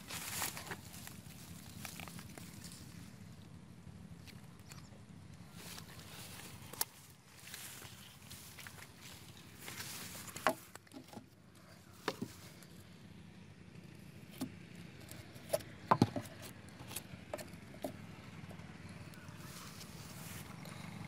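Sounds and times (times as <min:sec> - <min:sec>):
low steady hum: 0:00.0 - 0:21.0
hand tools knocking and clicking: 0:15.9 - 0:16.4.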